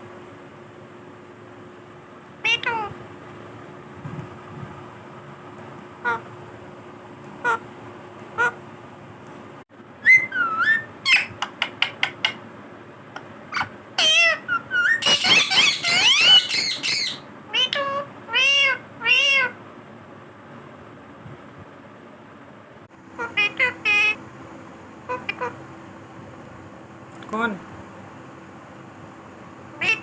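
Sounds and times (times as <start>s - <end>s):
parrot chattering calls: 2.4s - 3.0s, 6.0s - 6.3s, 7.4s - 7.6s, 8.4s - 8.6s, 10.0s - 12.4s, 13.5s - 19.6s, 23.2s - 24.2s, 25.1s - 25.6s, 29.8s - 30.0s
parrot wavering calls: 2.4s - 3.0s, 6.0s - 6.3s, 7.4s - 7.6s, 8.4s - 8.6s, 10.0s - 12.4s, 13.5s - 19.6s, 23.2s - 24.2s, 25.1s - 25.6s, 29.8s - 30.0s
parrot whistling and clicking: 10.0s - 12.4s, 13.2s - 17.8s.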